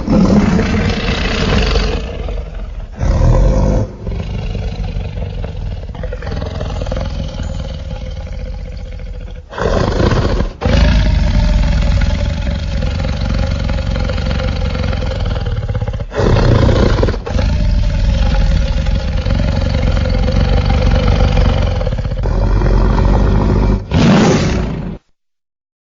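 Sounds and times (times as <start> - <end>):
deep dinosaur roars: 0.0 - 25.0.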